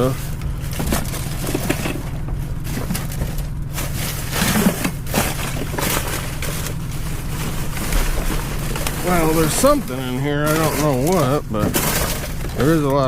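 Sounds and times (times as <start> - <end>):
steady low rumble: 0.0 - 13.0
trash rustling and knocking: 0.0 - 13.0.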